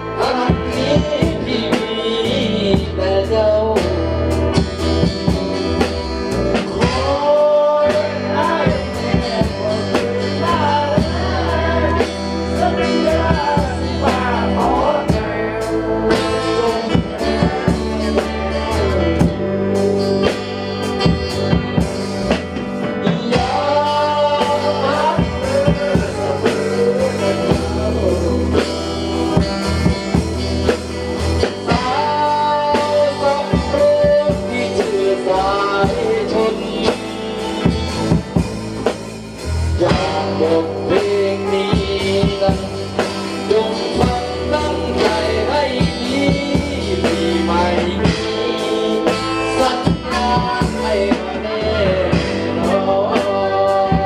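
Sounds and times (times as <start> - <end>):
band playing a song: 0.0 - 54.0
person singing: 0.0 - 54.0.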